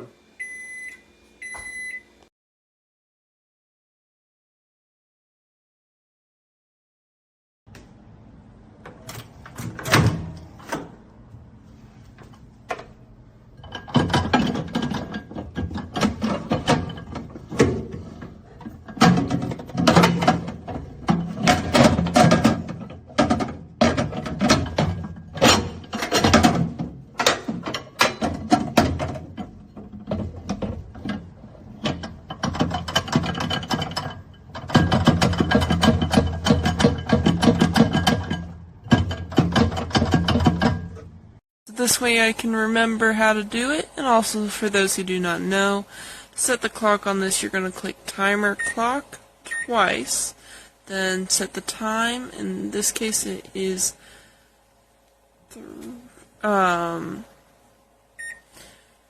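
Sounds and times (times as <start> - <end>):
microwave oven being handled: 8.8 - 11.0, 13.6 - 41.1.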